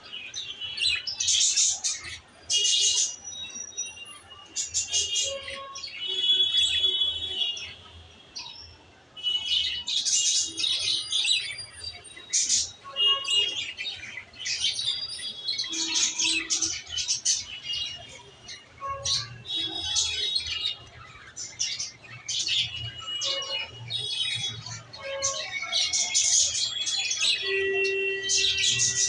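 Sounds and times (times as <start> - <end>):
small birds chirping and trilling: 0.0 - 29.0.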